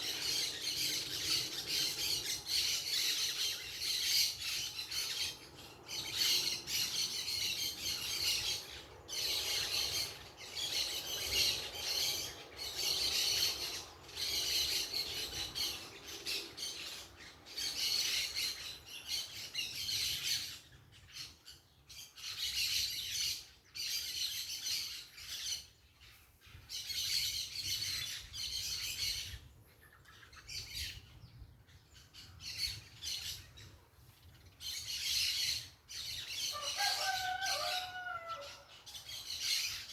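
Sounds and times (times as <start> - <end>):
parakeets chattering and squawking: 0.0 - 20.6.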